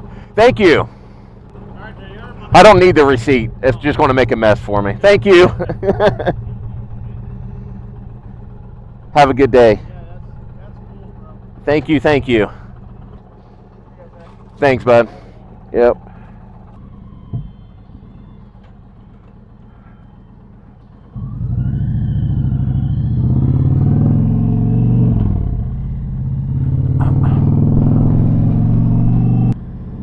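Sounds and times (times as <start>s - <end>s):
motorcycle engine revving: 1.4s - 30.0s.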